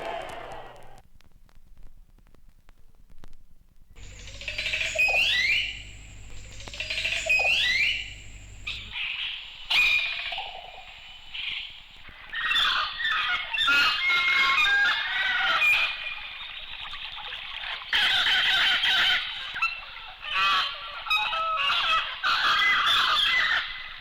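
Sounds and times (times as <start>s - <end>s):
chorus of birds calling: 4.0s - 11.6s
rising bird calls: 4.0s - 15.6s.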